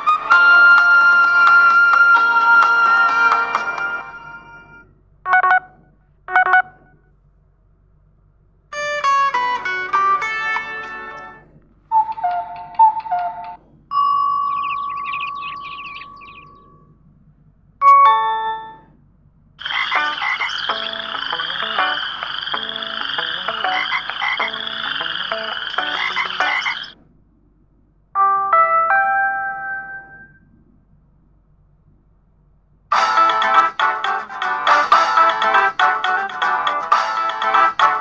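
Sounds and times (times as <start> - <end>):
electronic ringtone tune: 0.0 - 5.7, 8.8 - 16.8, 17.8 - 18.8, 19.6 - 27.0, 28.2 - 30.4
held phone tone: 11.9 - 16.9, 19.6 - 27.0.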